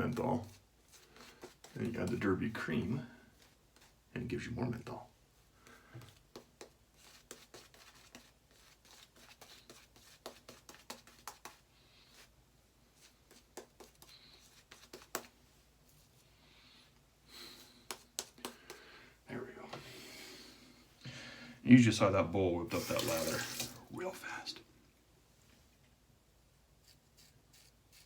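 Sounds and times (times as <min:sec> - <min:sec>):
shaving brush whipping lather: 0:22.7 - 0:23.8, 0:26.8 - 0:28.0.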